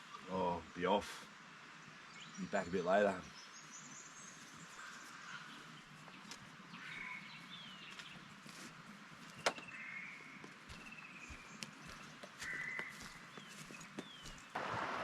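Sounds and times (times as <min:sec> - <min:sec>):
birds whistling: 0:09.3 - 0:14.6.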